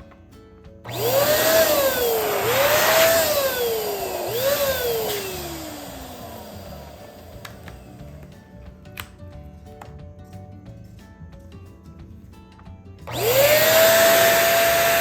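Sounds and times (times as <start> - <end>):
balloon pump air rush: 0.9 - 8.3, 13.1 - 15.0
pump motor whine: 0.9 - 8.3, 13.1 - 15.0.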